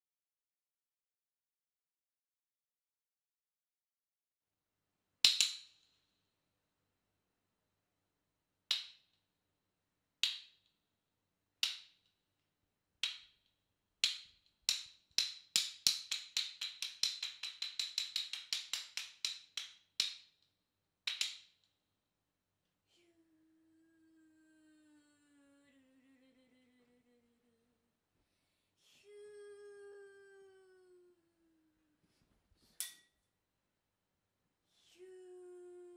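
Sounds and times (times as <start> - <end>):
wooden clappers clacking: 14.0 - 20.3.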